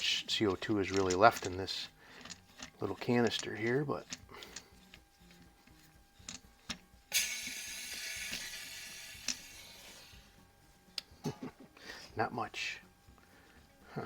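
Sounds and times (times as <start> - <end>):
gas hissing out: 7.1 - 10.4.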